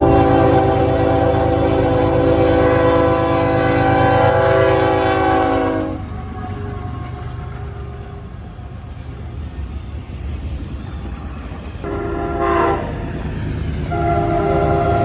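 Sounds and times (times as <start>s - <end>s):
locomotive air horn: 0.0s - 8.2s, 11.8s - 13.2s, 13.9s - 15.0s.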